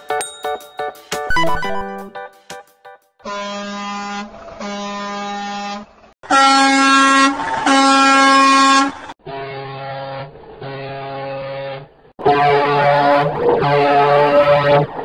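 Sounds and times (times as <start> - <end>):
truck air horn blasts: 3.2 - 9.1.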